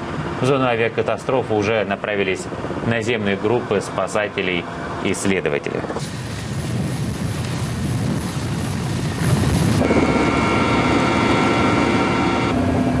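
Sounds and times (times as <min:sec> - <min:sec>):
turbine whine: 0:00.0 - 0:13.0
helicopter rotor thrum: 0:08.0 - 0:13.0.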